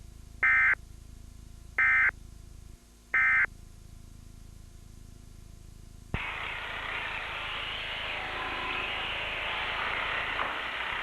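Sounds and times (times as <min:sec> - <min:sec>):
low hum: 0:00.0 - 0:11.0
loud static hiss: 0:06.0 - 0:11.0.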